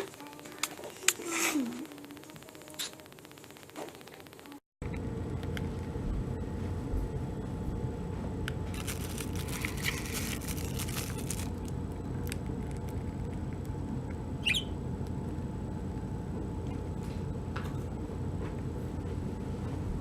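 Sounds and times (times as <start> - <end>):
low background hum: 0.0 - 20.0
budgerigar chattering: 14.4 - 14.7
budgerigar chirp: 14.4 - 14.7.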